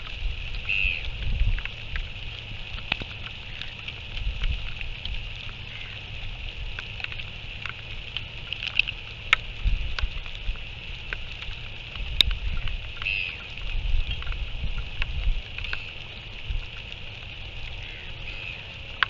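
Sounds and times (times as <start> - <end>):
wind gusting on microphone: 0.0 - 6.8, 9.4 - 16.7
high-pitched background hiss: 0.0 - 19.0.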